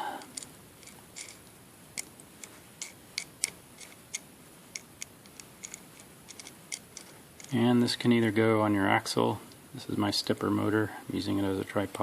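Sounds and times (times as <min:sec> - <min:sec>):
wing nut threaded onto bolt: 0:00.3 - 0:07.6.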